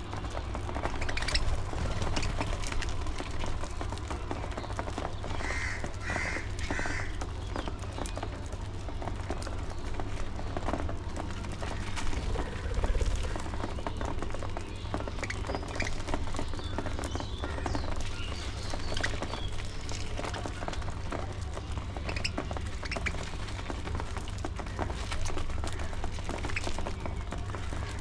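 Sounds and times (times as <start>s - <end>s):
harsh bird calls: 0.0s - 8.4s, 9.4s - 28.0s.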